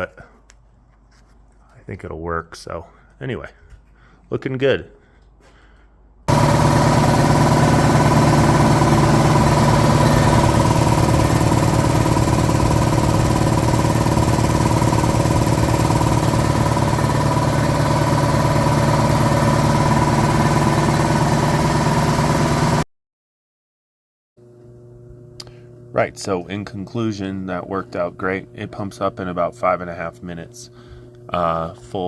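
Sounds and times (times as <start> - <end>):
air compressor pulsing with whine: 6.3 - 22.8.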